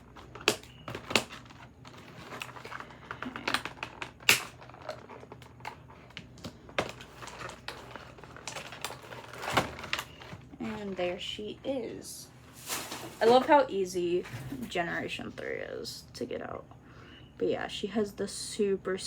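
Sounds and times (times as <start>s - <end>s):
packaging being handled: 0.0s - 11.2s.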